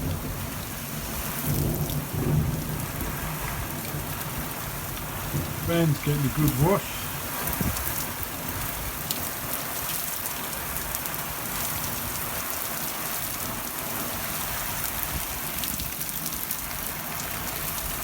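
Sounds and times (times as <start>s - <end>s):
steady rain hiss: 0.0s - 18.0s
raindrops ticking: 1.5s - 14.0s.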